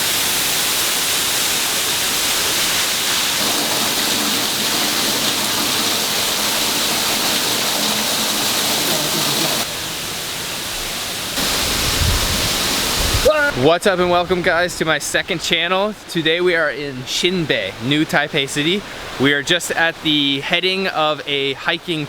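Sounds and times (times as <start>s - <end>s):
waterfall rushing: 0.0s - 13.8s.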